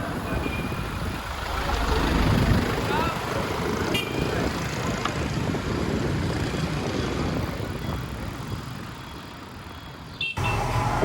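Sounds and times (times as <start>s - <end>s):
road traffic: 0.0s - 11.0s.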